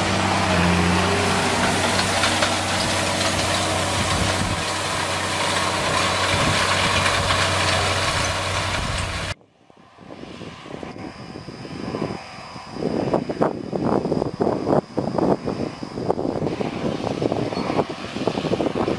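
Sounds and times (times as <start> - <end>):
tractor diesel engine running: 0.0 - 9.4.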